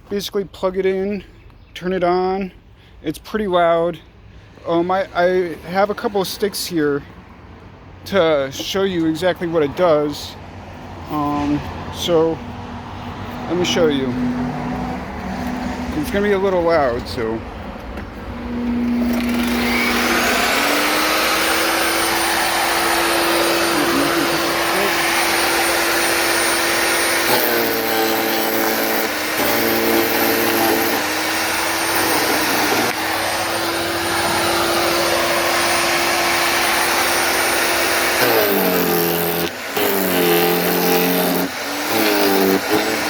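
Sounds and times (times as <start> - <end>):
wood chipper motor whining: 18.0 - 43.0.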